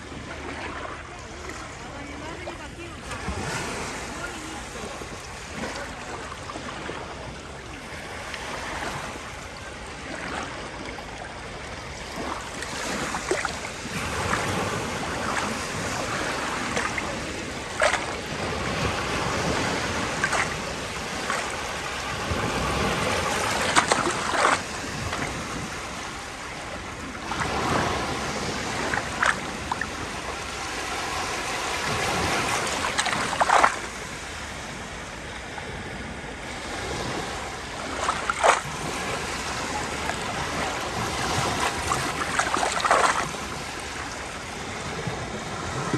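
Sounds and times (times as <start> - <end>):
sea waves washing in: 0.0 - 45.9
sharp water splashes: 12.1 - 34.4, 37.6 - 44.7.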